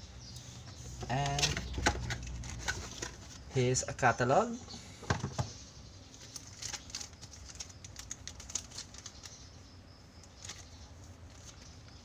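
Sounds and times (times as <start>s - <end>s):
paper rustling: 6.1s - 9.4s, 10.4s - 12.0s.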